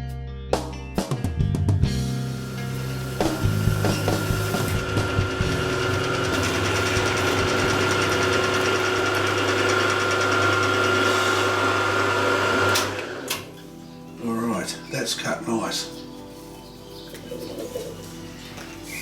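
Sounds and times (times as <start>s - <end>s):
milling machine cutting metal: 2.3s - 13.5s.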